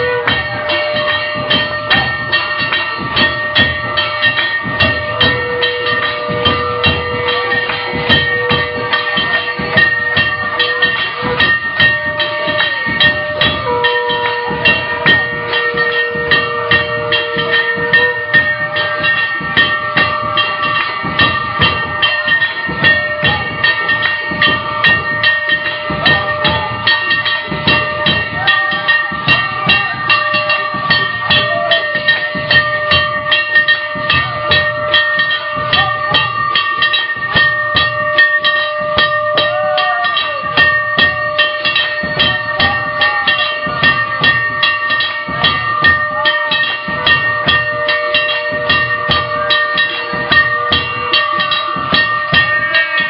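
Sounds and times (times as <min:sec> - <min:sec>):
fast steady percussion beat: 0:00.0 - 0:53.0
long held instrumental notes: 0:00.0 - 0:53.0.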